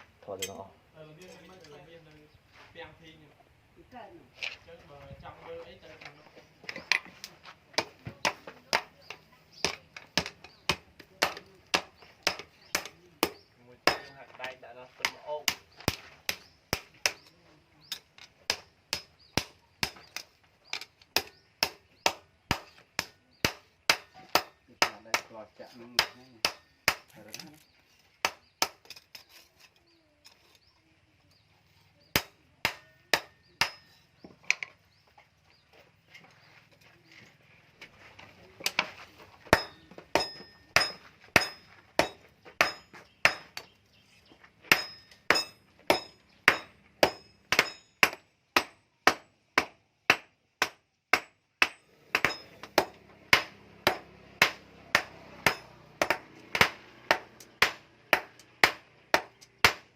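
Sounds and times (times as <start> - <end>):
hammer striking steel on anvil: 32.2 - 34.0, 39.5 - 43.7, 44.7 - 59.8.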